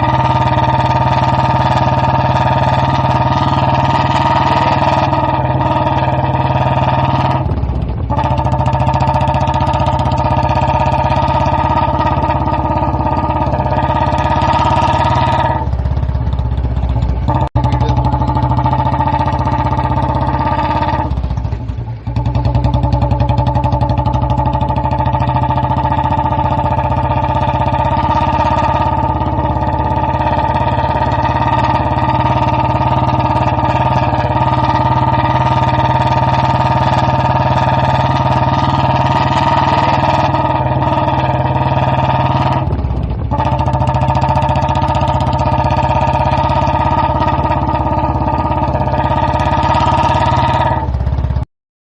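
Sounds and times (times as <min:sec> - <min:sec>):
motorcycle engine running: 0:00.0 - 0:51.5.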